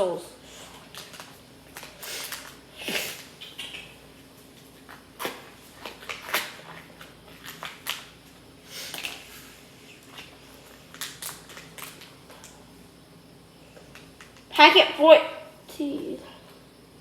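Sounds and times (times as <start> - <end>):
packets and plastic containers rustling: 0.6 - 3.3, 4.5 - 12.5.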